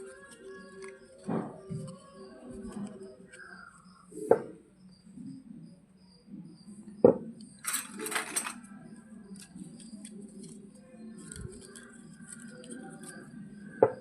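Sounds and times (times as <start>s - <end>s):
light plastic clicks and clinks: 7.4s - 10.6s.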